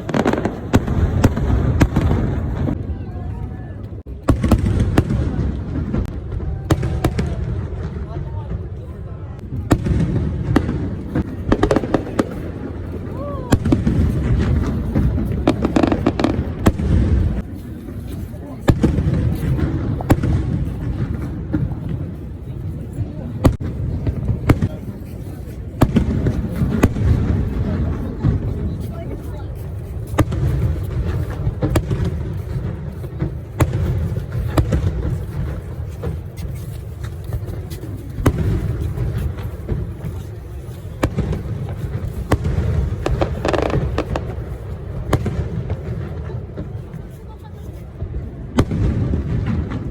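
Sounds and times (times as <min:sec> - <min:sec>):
fireworks cracks and bangs: 0:00.0 - 0:49.9.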